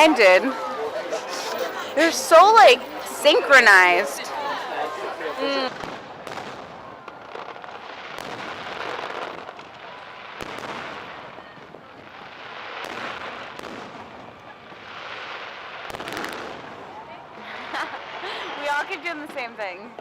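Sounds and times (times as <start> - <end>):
firework crackle and hiss: 5.4 - 20.0
firework bangs: 5.6 - 19.5.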